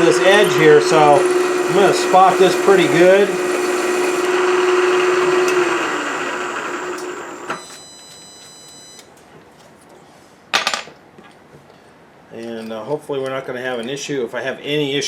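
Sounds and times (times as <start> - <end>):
drill cutting into steel: 0.0 - 7.6.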